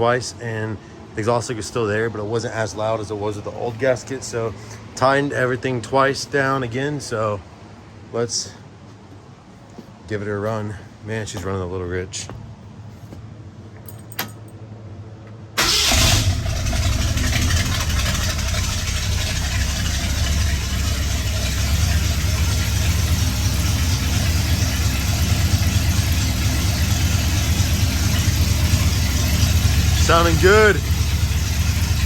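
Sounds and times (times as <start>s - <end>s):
truck engine starting and idling: 15.6s - 32.0s.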